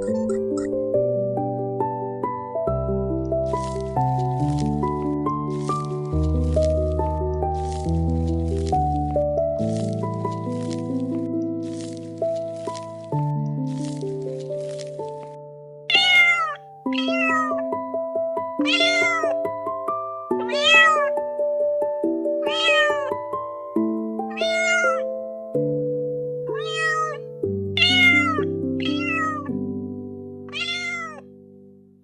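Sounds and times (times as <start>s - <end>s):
background music of held notes: 0.7s - 31.4s
cat meowing: 15.9s - 17.7s, 18.6s - 19.4s, 20.3s - 21.2s, 22.4s - 23.2s, 24.3s - 25.1s, 26.5s - 29.6s, 30.5s - 31.2s.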